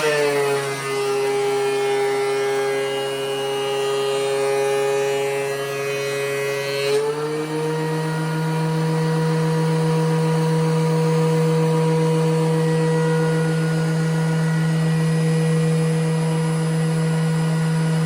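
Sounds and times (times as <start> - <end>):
thickness planer whining: 0.0 - 18.0.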